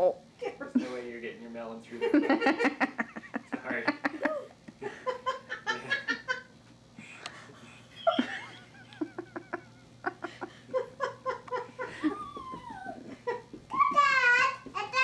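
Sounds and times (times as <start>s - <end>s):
people laughing: 2.0s - 6.5s, 7.2s - 13.5s.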